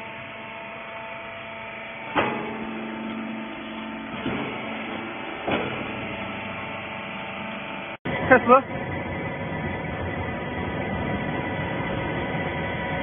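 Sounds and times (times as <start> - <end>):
baler machine hum: 0.0 - 13.0
sharp machine clunks: 2.1 - 6.7.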